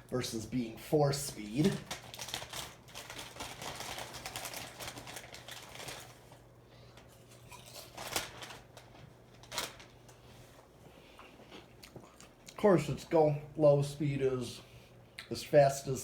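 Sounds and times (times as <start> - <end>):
ceiling fan motor humming: 0.0 - 16.0.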